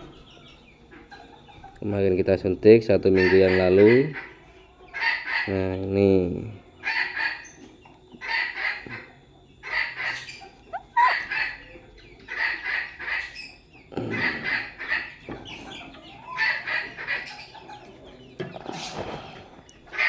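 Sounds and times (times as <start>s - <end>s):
chickens calling: 0.0s - 20.0s
rising chirp: 10.3s - 11.7s.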